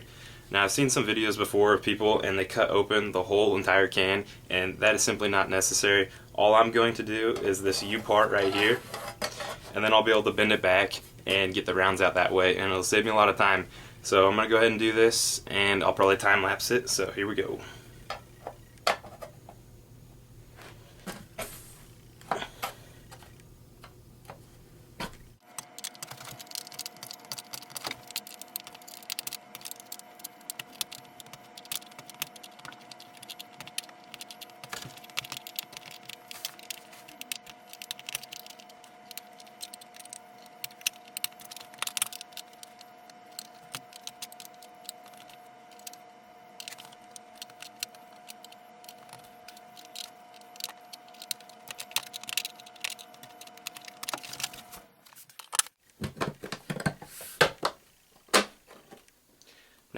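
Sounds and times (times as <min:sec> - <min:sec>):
metallic clicks and crunches: 0:25.4 - 0:46.0, 0:46.6 - 0:59.2.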